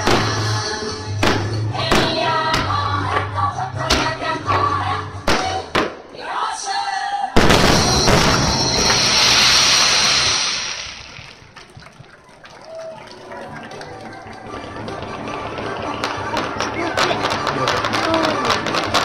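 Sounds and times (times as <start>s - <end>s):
music with sharp drum hits: 0.0s - 5.9s
loud firework burst: 7.4s - 11.7s
firework crackling: 7.4s - 12.8s, 14.3s - 19.0s.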